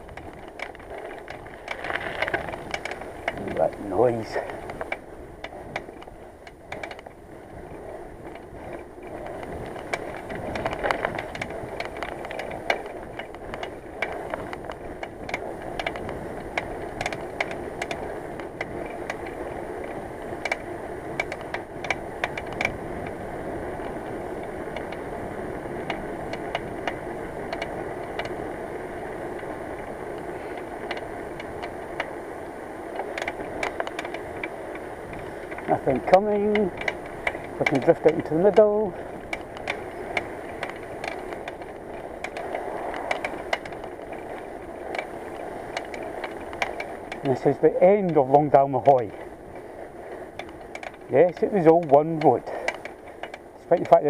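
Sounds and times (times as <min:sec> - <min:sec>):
bicycle rolling on road: 0:00.0 - 0:54.0
grinding rumble: 0:00.0 - 0:54.0
clicks and rattles: 0:08.3 - 0:19.4, 0:33.0 - 0:54.0.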